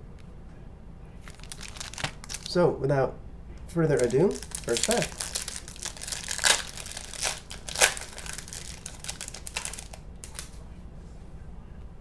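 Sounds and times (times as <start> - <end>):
foil wrapper tearing and crinkling: 1.2 - 2.6, 3.9 - 10.6.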